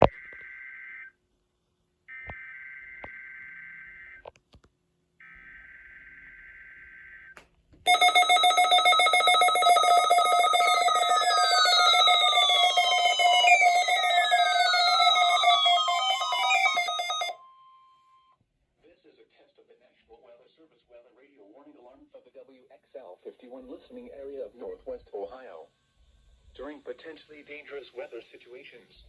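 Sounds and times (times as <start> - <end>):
buzzing data tone bursts: 7.9 - 17.3
weather radio alarm tone: 7.9 - 17.4.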